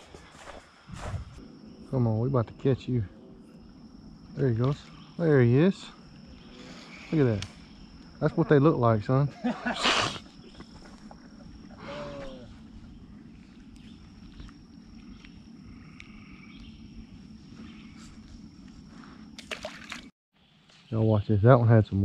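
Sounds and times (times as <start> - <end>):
high-pitched insect drone: 0.0 - 20.0
low voice-like call: 11.6 - 12.6.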